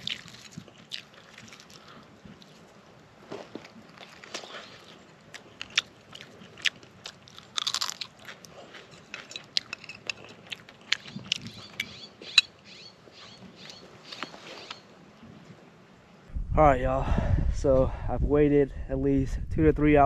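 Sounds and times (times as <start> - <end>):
person chewing crunchy food: 0.0 - 2.7, 3.3 - 12.5.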